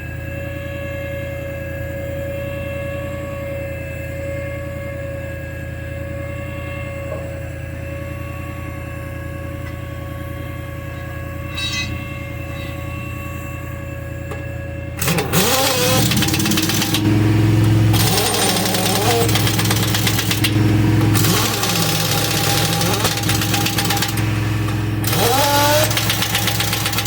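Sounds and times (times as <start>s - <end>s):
harsh wavering mechanical noise: 0.0s - 27.0s
motor humming: 6.2s - 27.0s.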